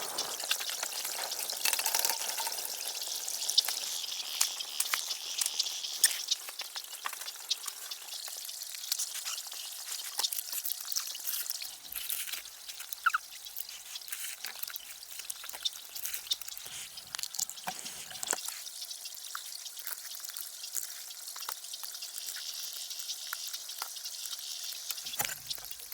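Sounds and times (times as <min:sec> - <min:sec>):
steady hiss: 0:00.0 - 0:08.3
water dripping and trickling: 0:00.0 - 0:25.9.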